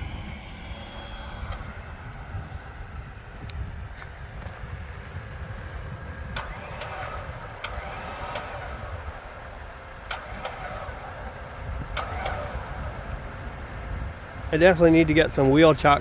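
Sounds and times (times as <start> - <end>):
electric winch rumbling: 0.0 - 16.0
sharp clicks: 6.3 - 8.8.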